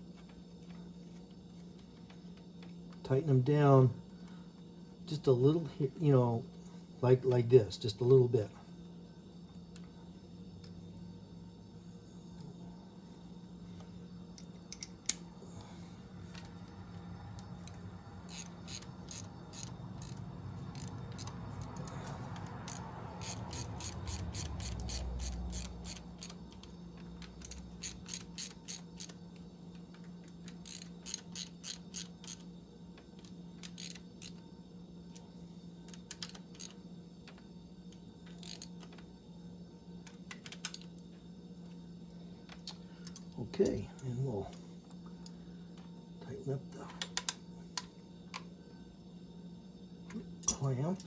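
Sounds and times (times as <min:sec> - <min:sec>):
hand ratchet clicking: 0:18.3 - 0:26.6, 0:27.3 - 0:29.2, 0:30.6 - 0:32.4.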